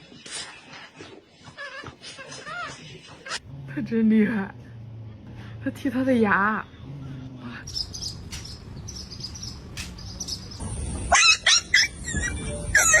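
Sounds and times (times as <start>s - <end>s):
pet bird chirping: 7.6s - 13.0s.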